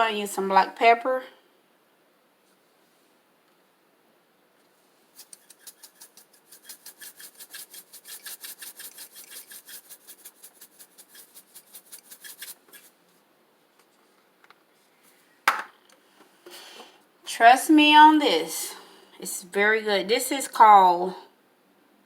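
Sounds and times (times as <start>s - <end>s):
pepper grinder rasping: 5.2s - 12.9s.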